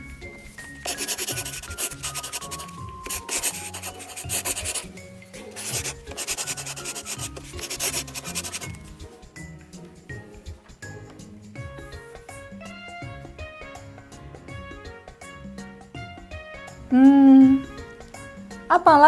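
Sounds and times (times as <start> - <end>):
soft background music: 0.0 - 19.0
pen scraping while writing: 0.6 - 8.9.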